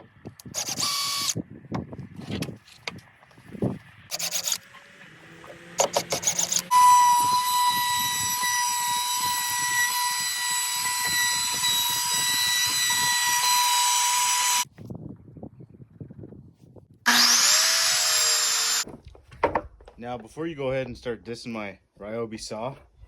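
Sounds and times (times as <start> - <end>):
miter saw motor whine: 0.6 - 1.4, 4.1 - 14.6, 17.1 - 18.8.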